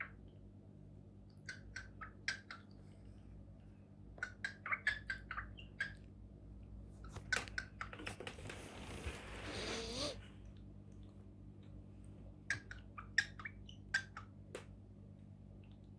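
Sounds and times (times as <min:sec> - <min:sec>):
cockatiel hiss: 0:08.7 - 0:10.3.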